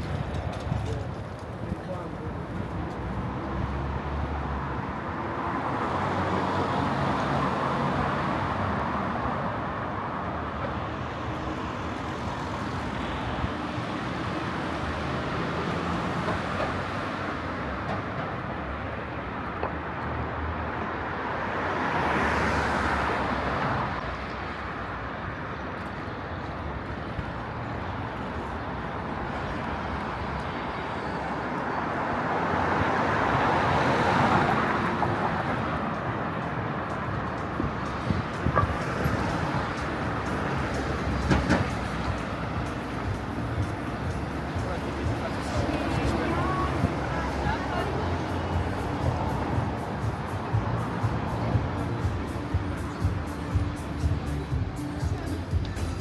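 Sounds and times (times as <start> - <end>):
city street traffic: 0.0 - 56.0
vehicle passing: 32.0 - 56.0.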